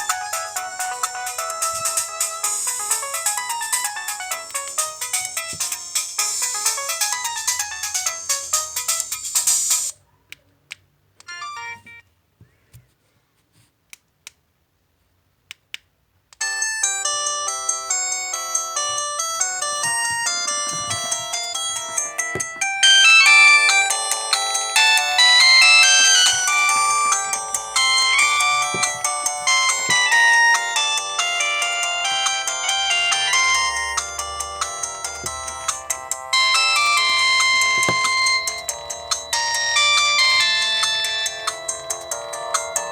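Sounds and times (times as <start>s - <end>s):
phone alarm melody: 11.3s - 12.0s, 16.4s - 42.9s
electronic alarm melody: 16.5s - 42.9s.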